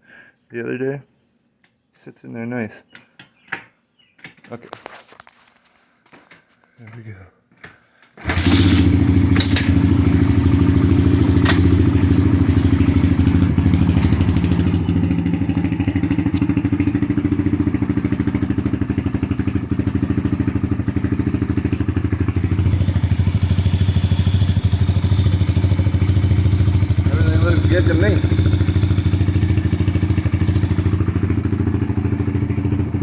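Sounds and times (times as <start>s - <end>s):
motorbike engine idling: 8.2s - 33.0s.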